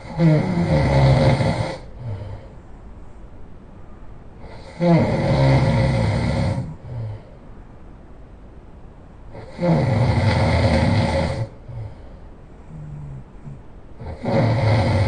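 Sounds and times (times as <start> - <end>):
person snoring loudly: 0.0 - 2.5, 4.4 - 7.3, 9.3 - 12.0, 12.7 - 15.0.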